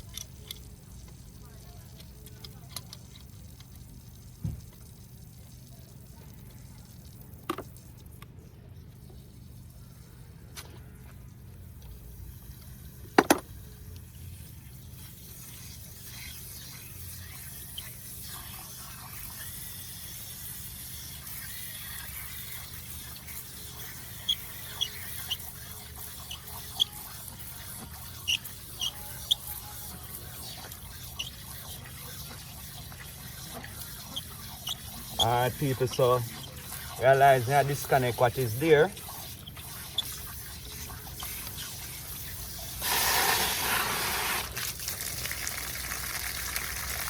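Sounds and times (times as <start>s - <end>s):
water hissing from leaking pipe: 13.8s - 47.0s
short high squeaks: 24.2s - 25.5s, 26.2s - 27.1s, 28.1s - 31.8s, 34.1s - 36.6s.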